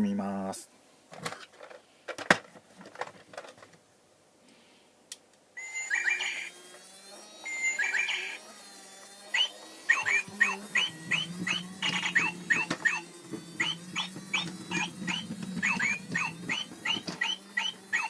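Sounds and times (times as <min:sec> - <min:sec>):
electronic bird song whistles: 0:05.6 - 0:06.5, 0:07.5 - 0:08.4, 0:09.3 - 0:18.0
low electronic hum: 0:05.6 - 0:18.0.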